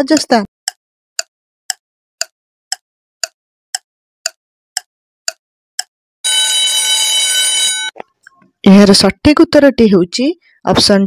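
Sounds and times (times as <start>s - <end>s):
clock-like ticking: 0.0s - 5.9s
electronic alarm tone: 6.2s - 8.0s.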